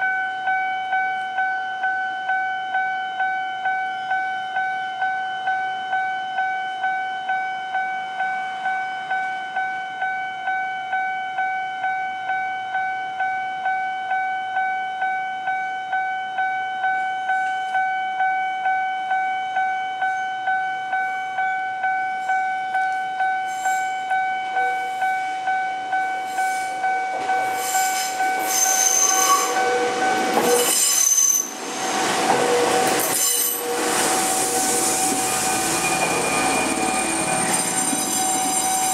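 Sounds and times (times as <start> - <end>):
level crossing warning bell: 0.0 - 38.9
train wheels rumbling and squealing: 22.8 - 38.9.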